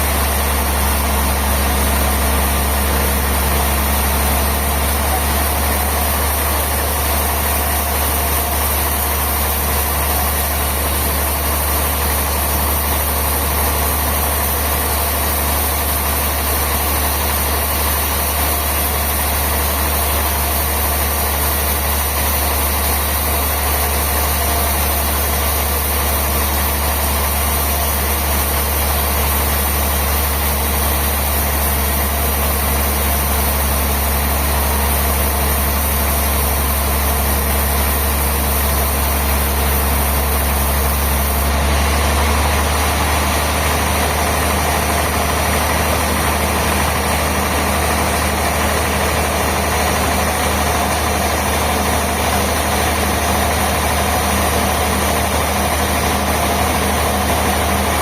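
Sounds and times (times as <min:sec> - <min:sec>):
sawmill machinery running: 0:00.0 - 0:58.0.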